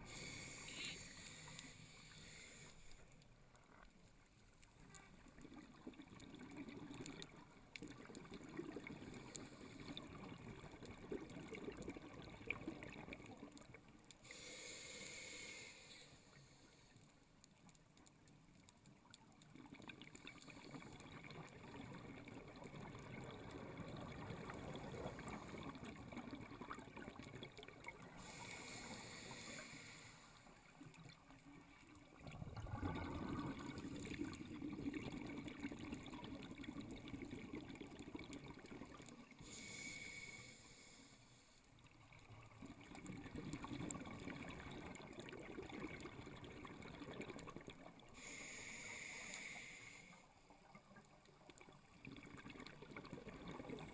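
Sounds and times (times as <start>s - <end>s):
regulator inhalation hiss: 0.0s - 3.0s, 14.2s - 16.9s, 28.2s - 30.5s, 39.4s - 41.6s, 48.2s - 50.4s
exhaled bubbles gurgling underwater: 4.8s - 15.3s, 19.0s - 40.8s, 41.8s - 53.9s.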